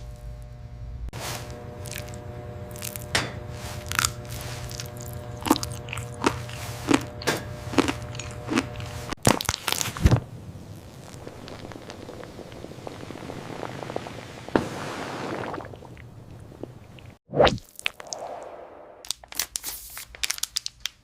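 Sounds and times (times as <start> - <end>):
steady low hum: 0.0 - 14.5
crisp crunching: 1.2 - 10.2, 19.1 - 21.0.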